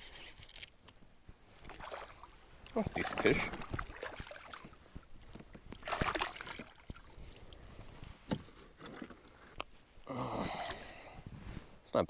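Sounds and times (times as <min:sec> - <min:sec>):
water splashing and sloshing: 0:01.6 - 0:09.6.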